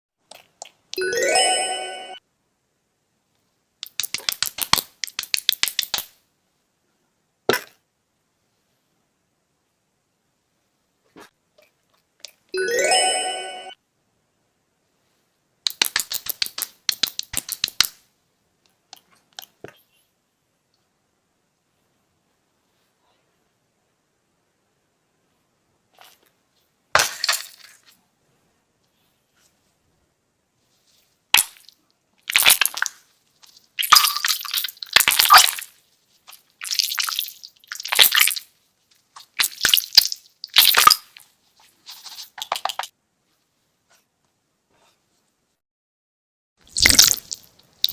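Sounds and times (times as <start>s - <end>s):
rising musical chime: 1.0s - 2.2s, 12.6s - 13.8s
fast sharp clicks: 3.8s - 6.1s, 15.7s - 18.0s
wet squishing and crackling: 31.4s - 41.2s, 46.6s - 47.9s.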